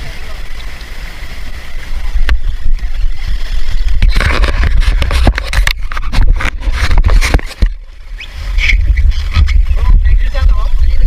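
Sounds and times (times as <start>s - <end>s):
wind buffeting microphone: 1.6s - 11.0s
knocks and scrapes: 3.8s - 10.0s.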